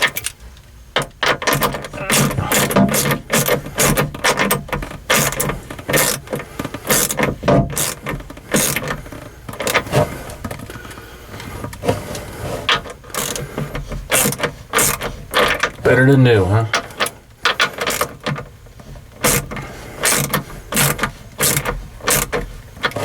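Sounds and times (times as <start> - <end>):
steady low hum: 0.0 - 23.0
socket ratchet clicking: 1.0 - 9.8, 14.1 - 15.8, 19.2 - 23.0.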